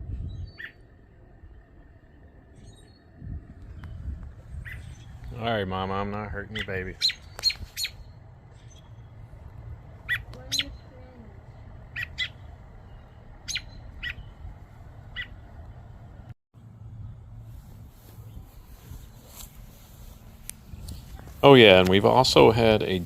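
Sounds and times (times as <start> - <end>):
bird alarm calls: 0.4 - 0.9, 3.8 - 5.3, 6.3 - 15.5.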